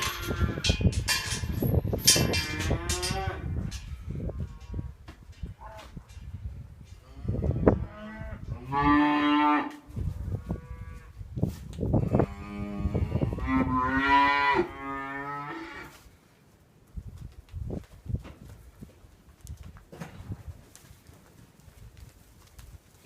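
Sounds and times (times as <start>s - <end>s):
knocks and shuffling: 15.8s - 23.0s.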